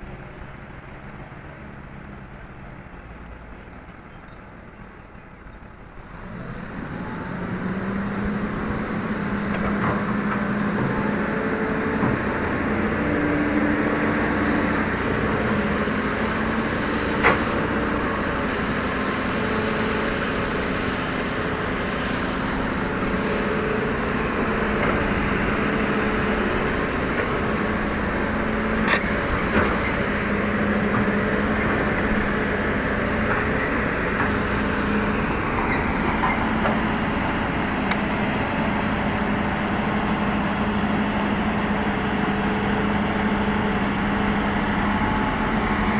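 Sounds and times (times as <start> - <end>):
excavator engine and hydraulics: 0.0 - 45.9.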